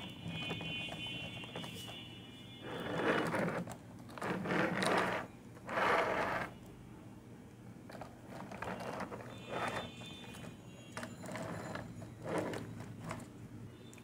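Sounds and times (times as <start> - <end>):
plastic toy scraping and clicking: 2.6 - 6.7, 7.9 - 13.4.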